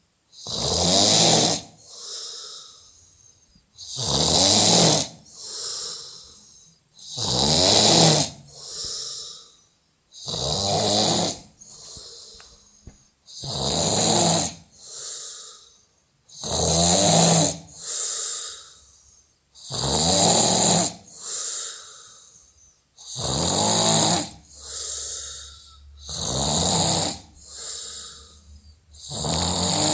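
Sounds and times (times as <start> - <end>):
loud snoring: 0.4 - 2.4, 3.8 - 6.2, 7.0 - 9.3, 10.2 - 12.0, 13.3 - 15.2, 16.3 - 18.6, 19.6 - 21.7, 23.0 - 29.9
quiet breath: 1.7 - 4.0, 5.2 - 7.2, 8.4 - 10.3, 11.4 - 13.4, 14.6 - 16.4, 17.7 - 19.6, 21.0 - 23.1, 24.3 - 26.3, 27.2 - 29.1.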